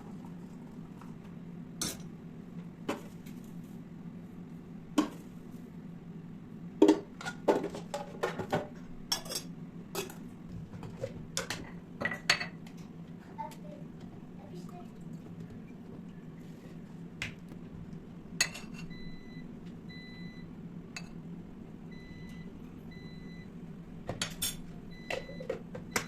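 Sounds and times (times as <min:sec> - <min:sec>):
dishes and cutlery clinking: 0:06.8 - 0:10.2, 0:18.4 - 0:19.0.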